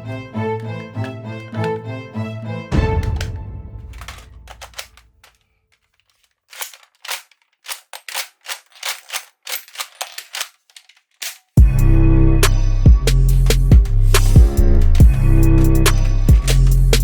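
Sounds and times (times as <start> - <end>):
toy gun mechanism clicking: 3.0 - 11.6, 14.7 - 17.0.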